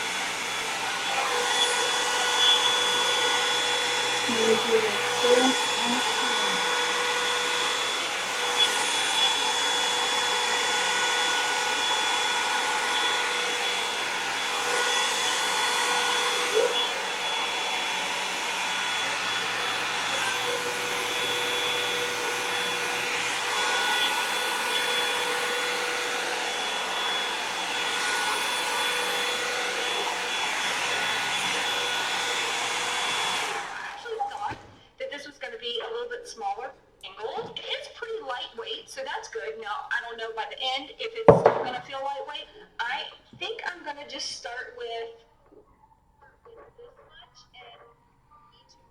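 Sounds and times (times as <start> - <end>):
hot-air brush blowing with whine: 0.0 - 34.8.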